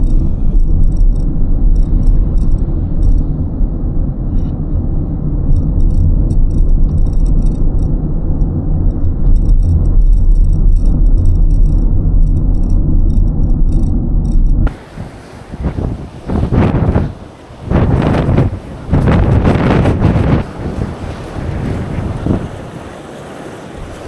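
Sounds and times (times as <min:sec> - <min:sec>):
small clicking rattles: 0:00.0 - 0:03.3, 0:05.5 - 0:14.7
wind buffeting microphone: 0:00.0 - 0:24.0.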